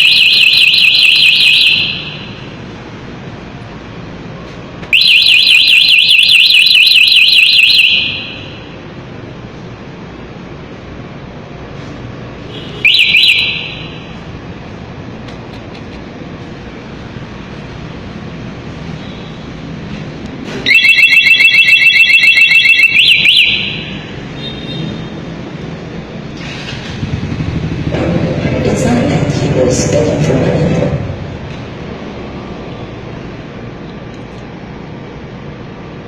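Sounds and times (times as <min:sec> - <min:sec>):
scooter alarm chirping and pulsing: 0:00.0 - 0:02.5, 0:05.0 - 0:08.7, 0:12.8 - 0:14.1, 0:20.6 - 0:24.7.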